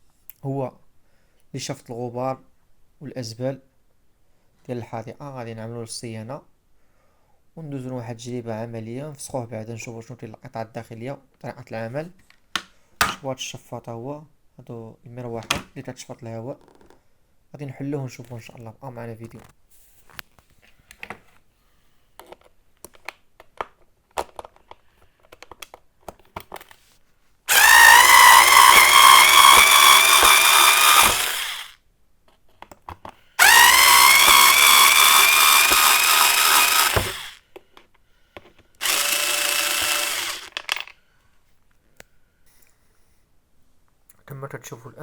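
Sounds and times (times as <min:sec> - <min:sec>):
garden vacuum motor whining: 0:27.5 - 0:31.8, 0:33.4 - 0:37.4, 0:38.8 - 0:40.5.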